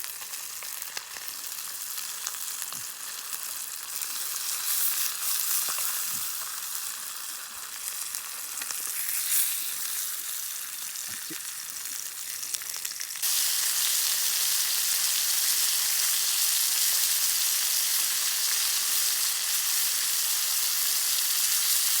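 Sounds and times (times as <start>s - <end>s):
meat sizzling over a campfire: 0.0s - 22.0s.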